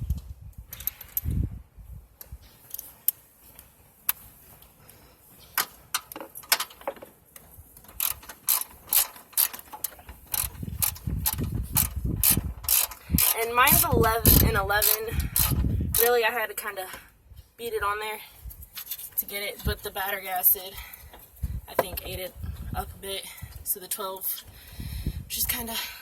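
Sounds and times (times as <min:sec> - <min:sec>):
socket ratchet clicking: 0:07.9 - 0:16.1.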